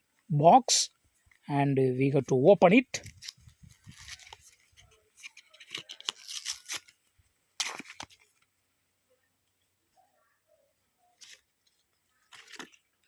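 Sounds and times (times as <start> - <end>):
packaging rustling and tearing: 3.1 - 7.0, 7.6 - 8.3.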